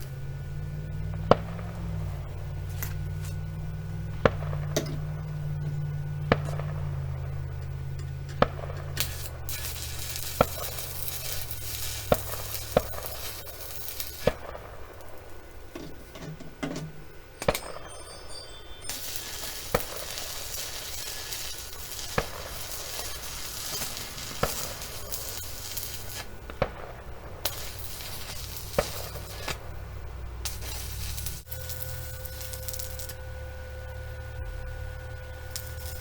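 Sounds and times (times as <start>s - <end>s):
low hum: 0.0s - 36.0s
gunshot cracks: 4.2s - 5.2s, 8.4s - 9.6s
hiss: 8.4s - 15.3s, 18.8s - 33.6s, 34.8s - 36.0s.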